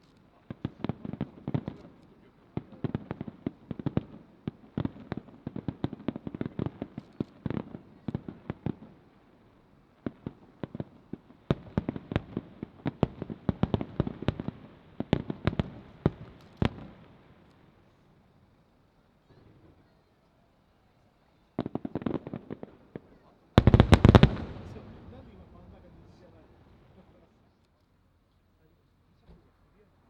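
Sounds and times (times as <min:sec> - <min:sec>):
fireworks bursting: 0:00.0 - 0:09.1, 0:11.5 - 0:17.7, 0:21.6 - 0:27.3.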